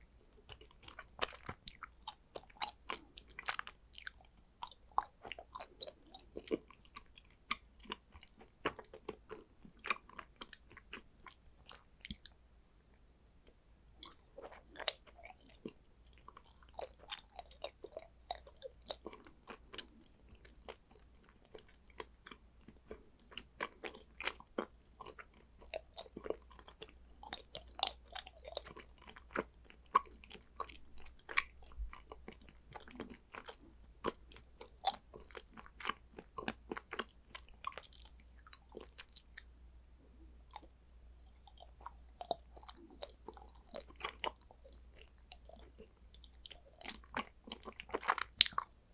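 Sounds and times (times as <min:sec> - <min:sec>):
chewing and crunching chocolate: 0:00.0 - 0:12.4, 0:13.4 - 0:39.5, 0:40.2 - 0:48.9.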